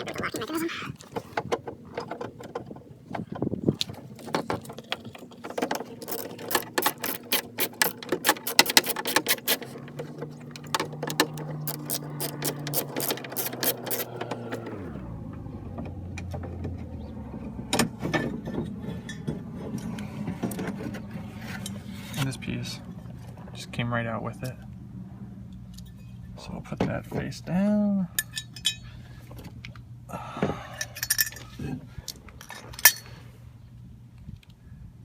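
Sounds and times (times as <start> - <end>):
car door lock mechanism clicking: 1.0 - 15.0.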